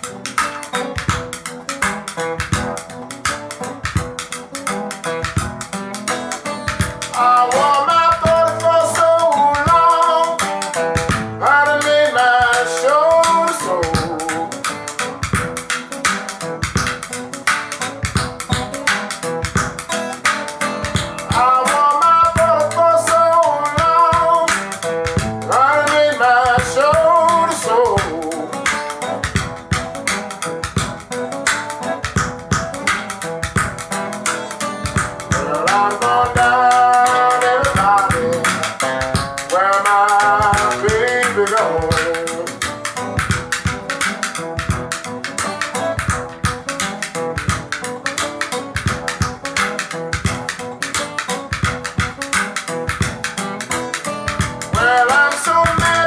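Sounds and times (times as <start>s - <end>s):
guitar: 0.0s - 56.0s
percussion: 0.0s - 56.0s
regular beat: 0.0s - 56.0s
person singing: 6.0s - 15.1s, 20.7s - 29.2s, 34.3s - 43.2s, 54.6s - 56.0s.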